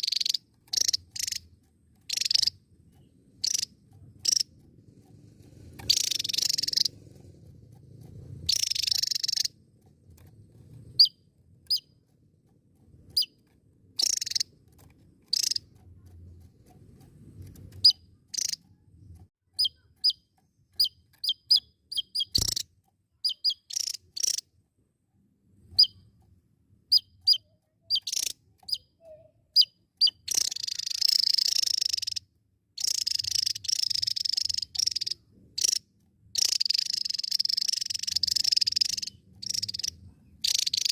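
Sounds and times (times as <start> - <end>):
buzzy bird song bursts: 0.0 - 1.5, 2.1 - 4.4, 5.8 - 7.0, 8.4 - 9.6, 14.0 - 14.5, 15.3 - 15.7, 17.7 - 18.6, 19.6 - 22.6, 23.2 - 24.4, 26.9 - 32.2, 32.8 - 35.8, 36.4 - 40.9
bird high chirps: 0.0 - 4.5, 5.8 - 7.0, 8.5 - 9.6, 10.9 - 12.0, 13.1 - 13.4, 14.0 - 14.5, 15.2 - 15.8, 17.7 - 18.7, 19.5 - 24.5, 25.7 - 26.1, 26.9 - 35.8, 36.4 - 40.9.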